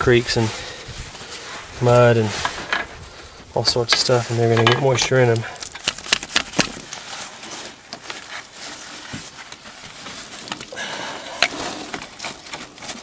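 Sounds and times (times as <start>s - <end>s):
clicks and knocks of parts: 3.9s - 6.9s.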